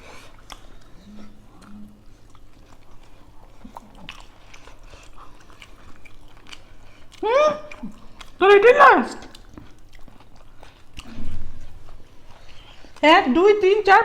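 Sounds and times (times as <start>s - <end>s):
people chewing food: 0.0s - 14.0s
closed-mouth hums: 6.6s - 9.4s.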